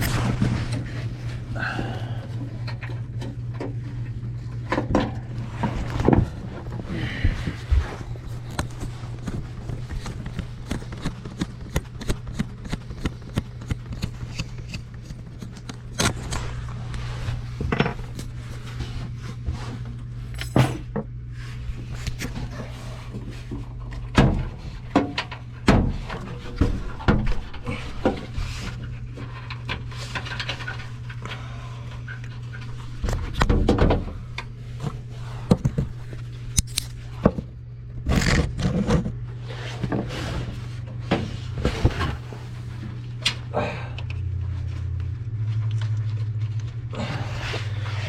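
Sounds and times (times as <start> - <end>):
steady low hum: 0.0 - 48.0
metallic tool clicks and clinks: 36.6 - 37.0.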